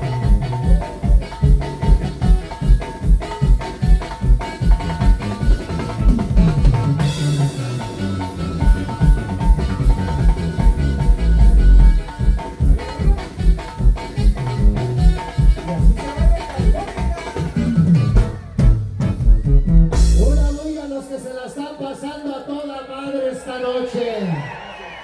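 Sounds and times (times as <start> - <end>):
thumping drum beat: 0.0 - 20.9
cymbal crash: 20.0 - 20.9.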